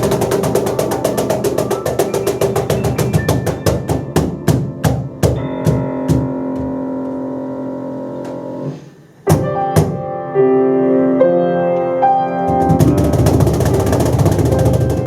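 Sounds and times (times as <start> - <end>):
percussion rhythm: 0.0 - 6.8, 12.4 - 15.0
piano playing: 0.0 - 15.0.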